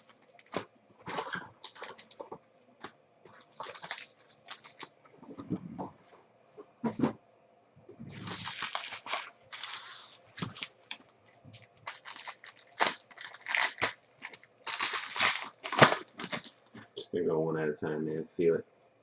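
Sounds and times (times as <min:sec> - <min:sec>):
wrapper tearing open: 0:00.0 - 0:02.2, 0:03.4 - 0:04.9, 0:08.1 - 0:16.5
wrapper crinkling: 0:00.0 - 0:02.3, 0:03.3 - 0:04.9, 0:08.1 - 0:16.6
sharp crack of wrapper: 0:03.5 - 0:04.9, 0:08.2 - 0:09.8, 0:10.5 - 0:16.5.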